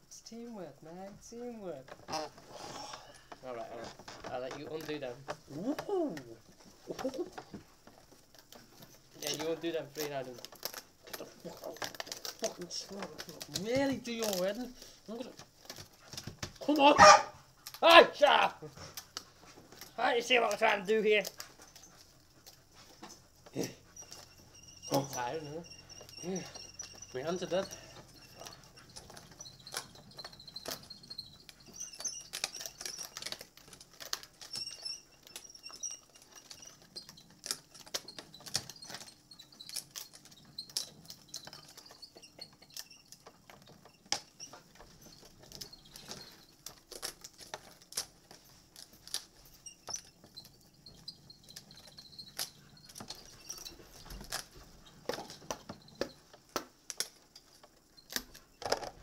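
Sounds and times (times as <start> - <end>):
hands handling small plastic parts: 3.3 - 16.9.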